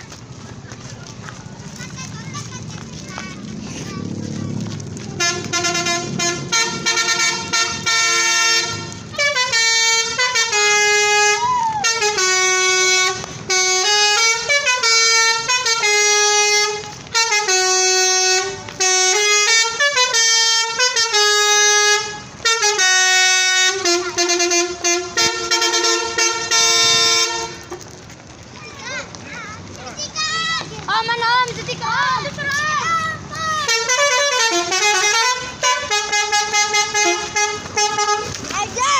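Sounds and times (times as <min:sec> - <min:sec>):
musical air horn tune: 0:05.2 - 0:27.8, 0:33.6 - 0:38.3.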